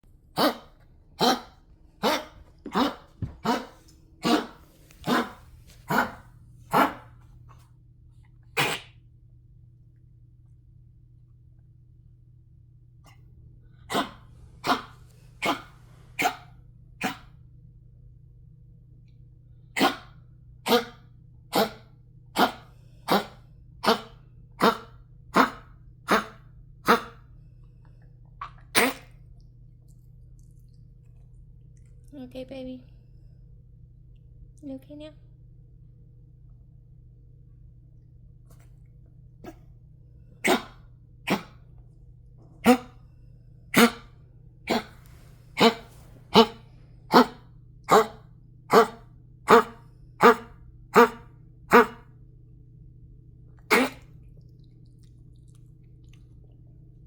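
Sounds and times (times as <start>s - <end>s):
dog coughing: 0.4s - 7.0s, 8.6s - 9.0s, 13.9s - 17.2s, 19.8s - 27.2s, 28.4s - 29.2s, 40.4s - 41.6s, 42.6s - 43.0s, 43.7s - 44.1s, 44.7s - 45.0s, 45.6s - 52.0s, 53.6s - 54.1s.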